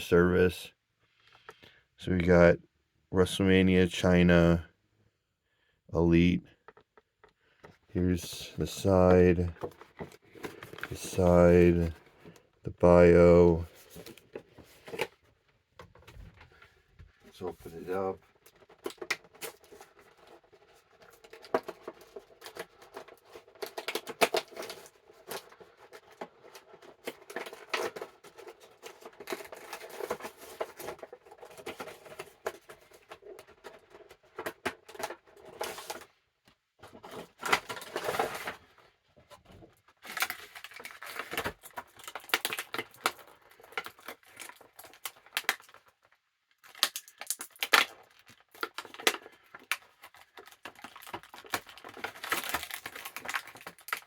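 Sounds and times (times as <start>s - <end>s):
packaging tearing and crinkling: 17.7s - 36.1s, 36.9s - 38.7s, 40.0s - 54.0s.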